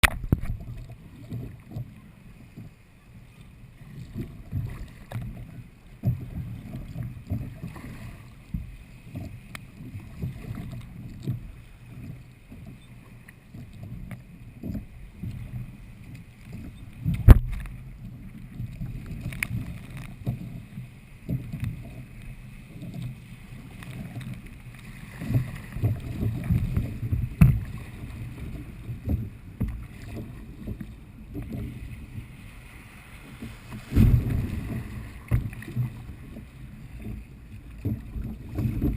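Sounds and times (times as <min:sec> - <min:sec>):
water sloshing against kayak hull: 0:00.0 - 0:38.9
knocks on hull: 0:17.1 - 0:17.8, 0:25.3 - 0:27.8, 0:33.8 - 0:36.0.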